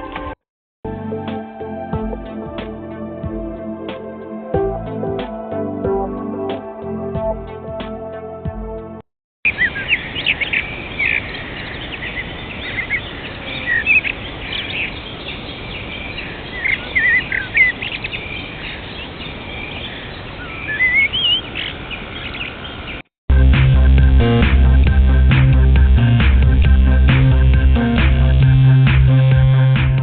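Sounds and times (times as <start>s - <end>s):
music: 0.0s - 9.1s, 23.3s - 30.0s
birds chirping: 9.4s - 23.0s.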